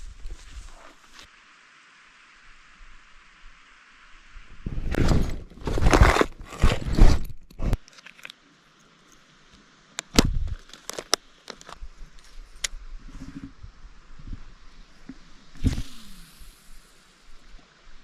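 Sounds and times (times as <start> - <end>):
loud crunching and rustling: 4.9 - 7.8.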